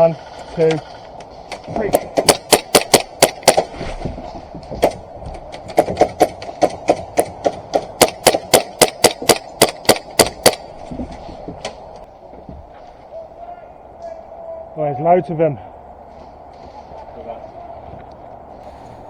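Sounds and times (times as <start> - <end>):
airsoft pistol shots: 2.0 - 3.7, 5.8 - 10.7.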